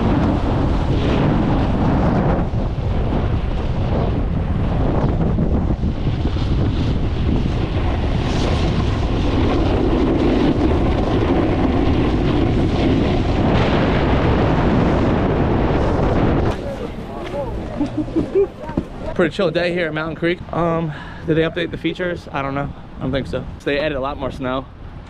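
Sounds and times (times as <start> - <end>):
wind rushing over microphone: 0.0 - 25.0.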